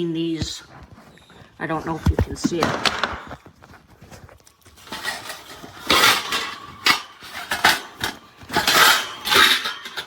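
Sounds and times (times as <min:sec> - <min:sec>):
plastic carrier clattering: 0:02.5 - 0:03.5, 0:04.8 - 0:10.0.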